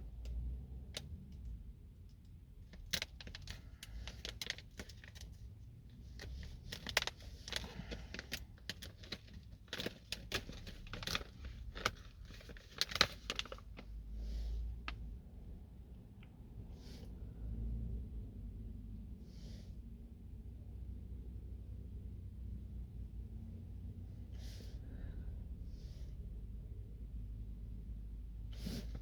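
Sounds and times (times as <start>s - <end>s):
plastic packaging crinkling: 2.7s - 5.4s, 6.1s - 14.0s.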